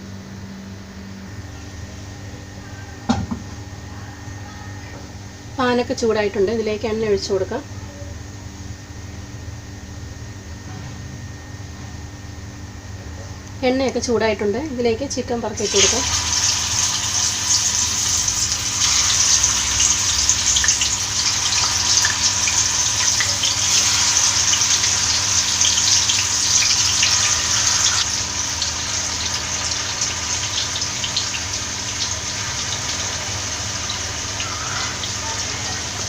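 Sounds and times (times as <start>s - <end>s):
chicken sizzling in hot oil: 15.5s - 36.0s
oil crackling and popping: 15.7s - 32.2s.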